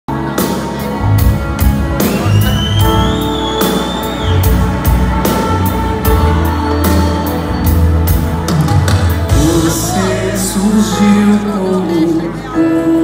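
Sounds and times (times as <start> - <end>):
live band playing: 0.1 - 13.0
steady drum beat: 0.4 - 10.5.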